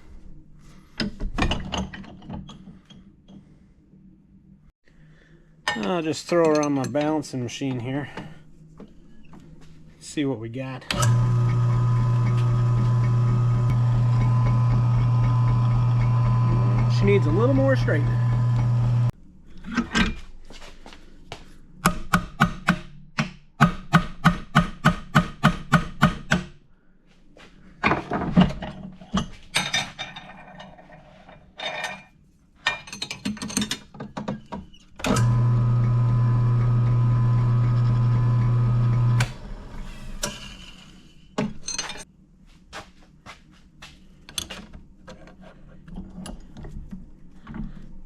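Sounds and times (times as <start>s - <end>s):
machine motor humming: 10.9s - 19.1s, 35.1s - 39.8s.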